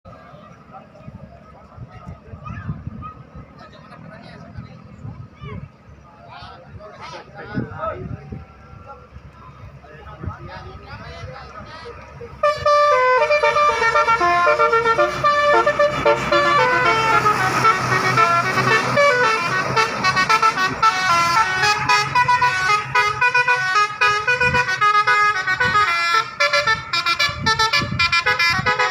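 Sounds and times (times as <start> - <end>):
bus air horn playing tune: 12.4 - 28.9.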